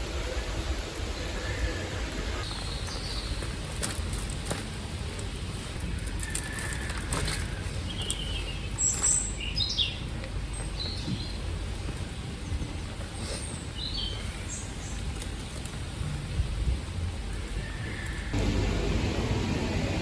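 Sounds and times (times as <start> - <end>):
small birds chirping: 0.3 - 4.1, 4.7 - 16.0
low background rumble: 13.8 - 20.0.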